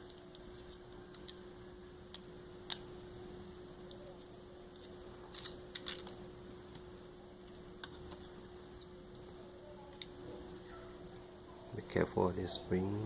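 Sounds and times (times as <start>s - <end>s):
small parts clicking: 0.0s - 1.4s, 3.8s - 9.3s
steady low hum: 0.0s - 13.0s.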